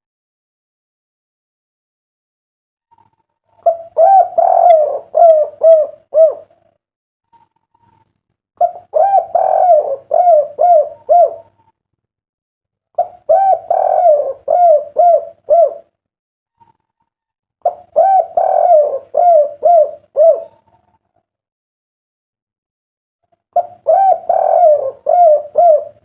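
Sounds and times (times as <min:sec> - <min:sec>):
dove cooing: 0:02.9 - 0:06.7, 0:08.6 - 0:11.7, 0:13.0 - 0:16.0, 0:17.6 - 0:21.1, 0:23.6 - 0:26.0.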